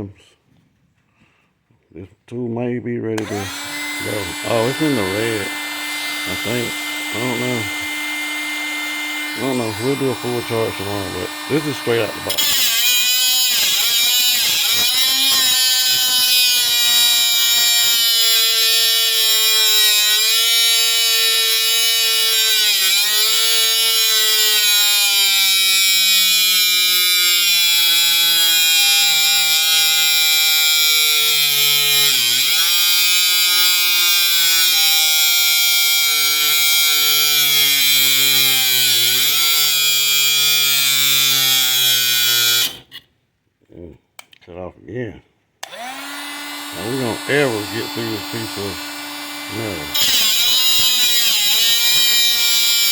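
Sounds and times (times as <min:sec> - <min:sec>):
grinder disc hissing on metal: 0:03.2 - 0:27.7, 0:45.7 - 0:52.9
angle grinder motor whine: 0:03.2 - 0:43.0, 0:45.6 - 0:52.9.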